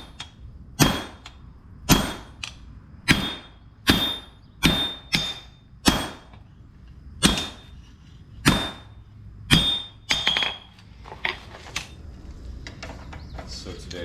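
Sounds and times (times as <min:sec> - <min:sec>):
hammer striking steel on anvil: 0:00.0 - 0:06.4, 0:07.2 - 0:10.7.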